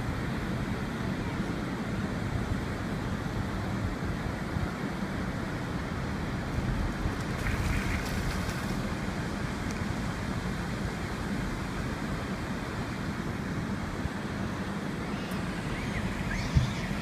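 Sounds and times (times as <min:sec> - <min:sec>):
car driving rumble: 0:05.7 - 0:17.0.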